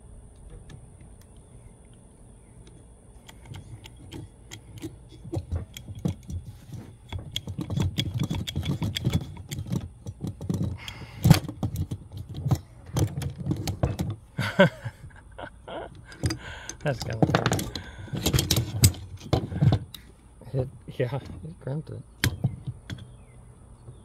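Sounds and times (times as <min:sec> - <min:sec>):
crimping press clicking and clanking: 0:03.3 - 0:14.2, 0:16.0 - 0:20.0.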